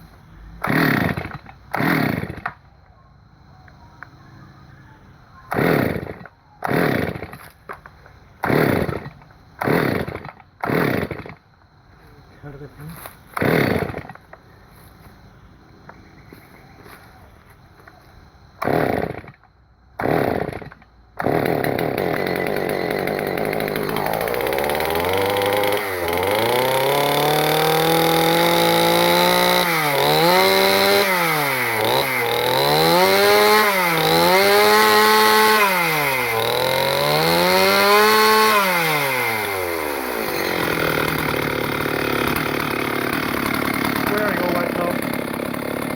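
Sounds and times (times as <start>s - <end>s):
chainsaw starting and revving: 0.6s - 2.6s, 5.5s - 7.6s, 8.4s - 11.4s, 13.3s - 14.2s, 18.6s - 19.4s, 20.0s - 45.9s.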